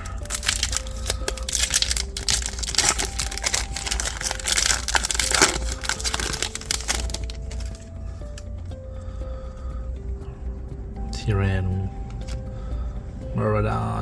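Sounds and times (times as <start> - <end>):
foil wrapper crinkling and tearing: 0.0 - 8.4.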